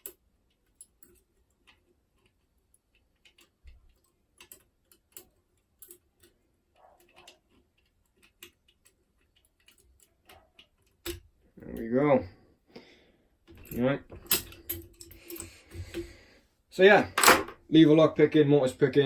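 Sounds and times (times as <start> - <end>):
metallic lock picking clicks: 3.2 - 11.3, 13.5 - 15.5.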